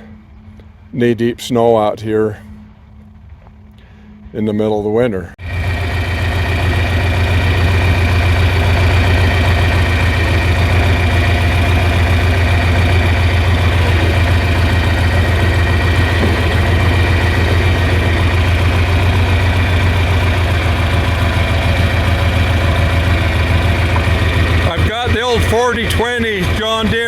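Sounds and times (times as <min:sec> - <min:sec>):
tractor engine idling: 0:05.4 - 0:27.0.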